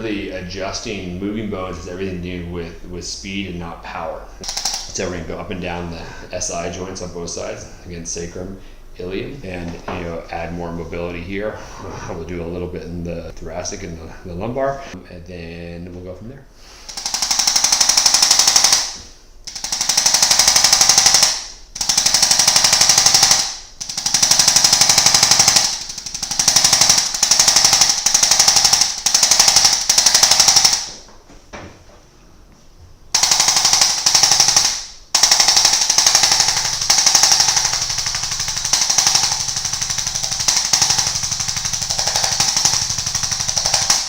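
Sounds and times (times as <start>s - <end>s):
adjusting instrument rapid taps: 33.2s - 44.0s.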